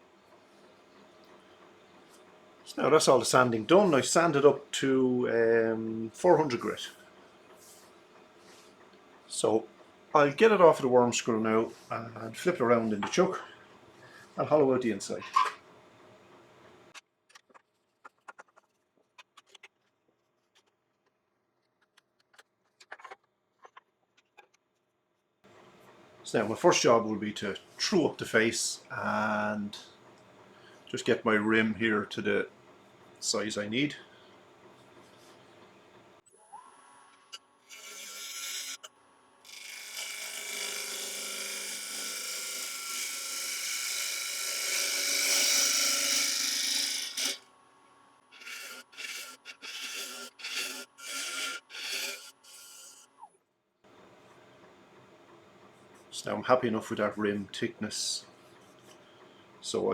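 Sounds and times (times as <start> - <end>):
wood lathe spinning: 37.7 - 47.4, 48.4 - 53.0
tool scraping spinning wood: 39.6 - 47.4, 48.3 - 53.2.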